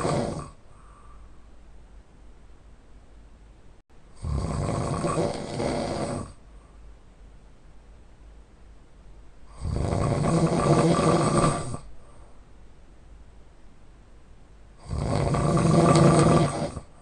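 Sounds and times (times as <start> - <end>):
man snoring loudly: 0.0 - 0.6, 4.2 - 6.4, 9.5 - 11.9, 14.8 - 17.0.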